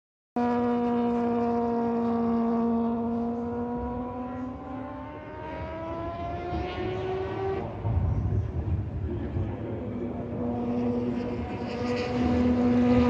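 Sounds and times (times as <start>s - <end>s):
low rumble: 7.7s - 11.5s
rotary engine revving: 9.9s - 13.0s.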